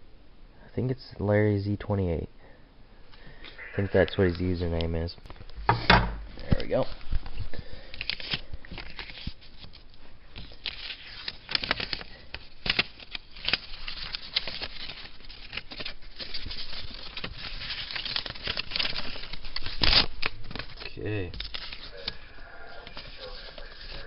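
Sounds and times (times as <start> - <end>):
paper rustling and tearing: 7.9 - 9.8, 10.4 - 24.0.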